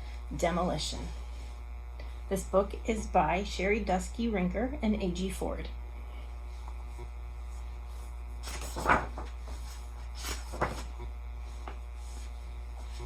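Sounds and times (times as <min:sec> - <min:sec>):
low electrical hum: 0:00.0 - 0:13.0
book pages rustling: 0:08.4 - 0:13.0.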